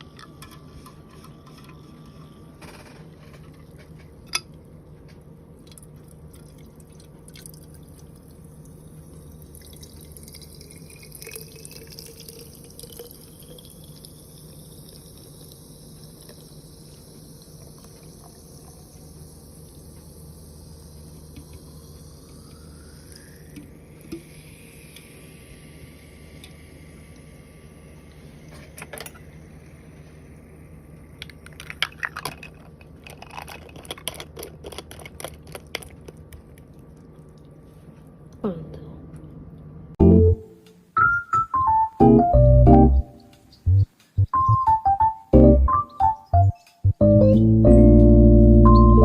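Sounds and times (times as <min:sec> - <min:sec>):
water running: 0:06.1 - 0:25.1
rising tone: 0:42.0 - 0:49.0.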